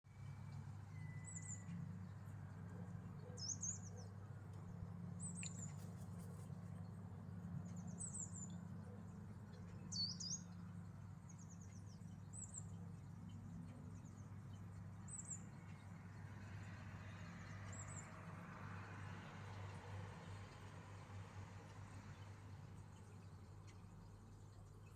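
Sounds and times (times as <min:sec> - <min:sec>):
small bird chirping: 0:05.2 - 0:16.2.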